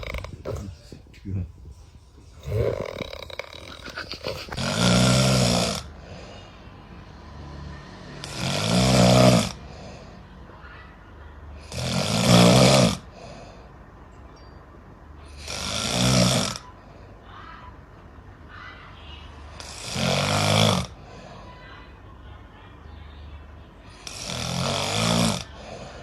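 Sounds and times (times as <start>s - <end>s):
person snoring: 0.0s - 0.8s, 2.4s - 6.5s, 8.2s - 10.1s, 11.6s - 13.2s, 15.3s - 16.6s, 19.6s - 21.0s, 24.0s - 26.0s
soft breathing: 5.9s - 7.0s, 25.5s - 26.0s.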